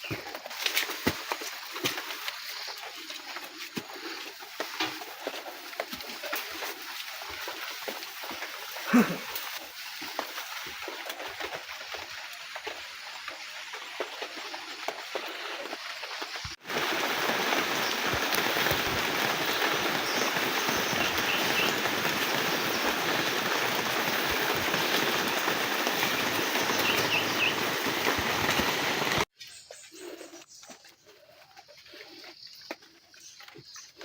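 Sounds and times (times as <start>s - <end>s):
heavy rain falling: 16.6s - 29.3s.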